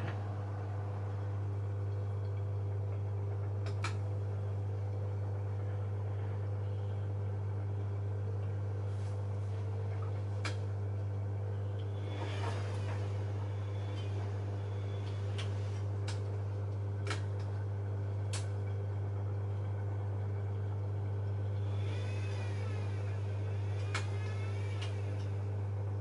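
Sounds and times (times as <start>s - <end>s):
washing machine motor hum: 0.0s - 26.0s.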